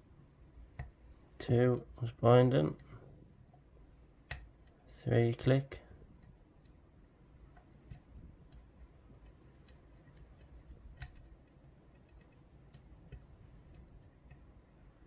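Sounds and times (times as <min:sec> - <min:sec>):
lock pick metallic clicks: 0:09.5 - 0:15.0.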